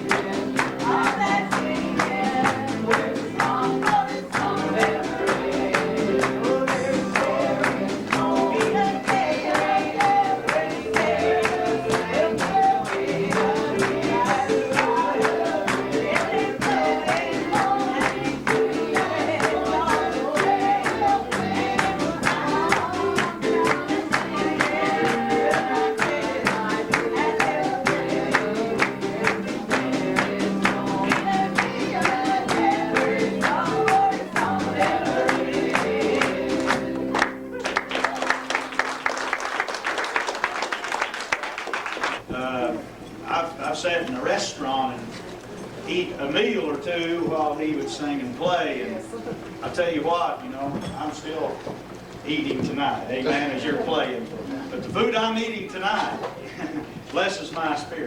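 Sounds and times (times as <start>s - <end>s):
bass: 0.0s - 38.6s
person singing gospel: 0.0s - 38.9s
piano: 0.0s - 41.1s.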